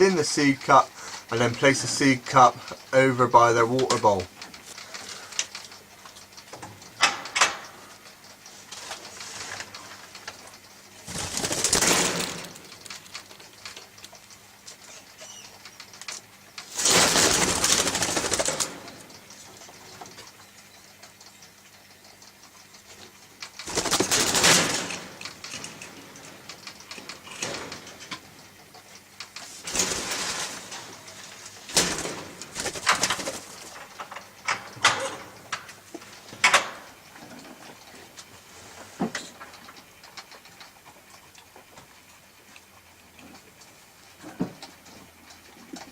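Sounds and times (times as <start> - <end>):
bird wingbeats and scuffling: 8.6 - 14.2, 16.1 - 20.2, 23.5 - 28.2, 29.3 - 33.8.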